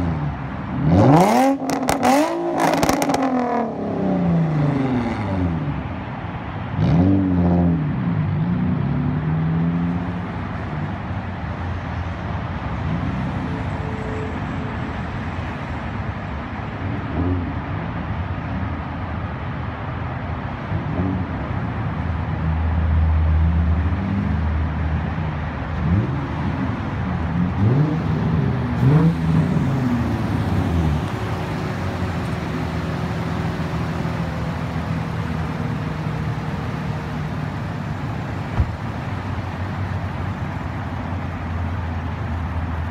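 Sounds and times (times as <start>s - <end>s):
loud car exhaust revving: 0.8s - 5.5s, 25.8s - 38.8s.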